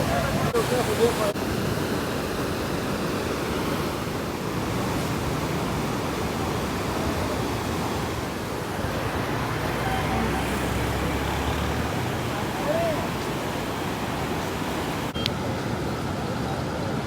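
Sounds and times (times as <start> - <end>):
floodwater rushing: 0.0 - 17.0.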